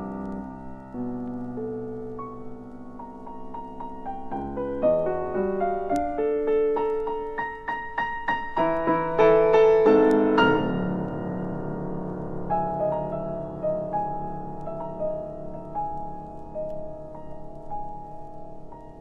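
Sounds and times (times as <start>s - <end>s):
solo piano piece: 0.0s - 19.0s.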